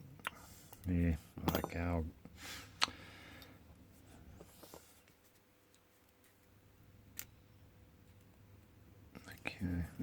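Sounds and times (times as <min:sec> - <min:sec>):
padlock parts tapping and scraping: 0:00.6 - 0:02.0.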